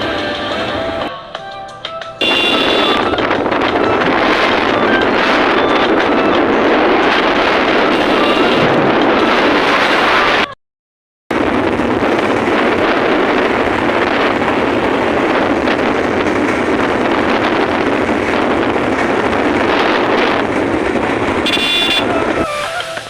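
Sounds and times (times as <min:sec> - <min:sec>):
vehicle ride rushing noise: 0:00.0 - 0:10.6, 0:11.3 - 0:23.0
brief high tone: 0:02.2 - 0:06.5, 0:07.9 - 0:08.7
wind on microphone: 0:02.2 - 0:10.6, 0:11.3 - 0:23.0.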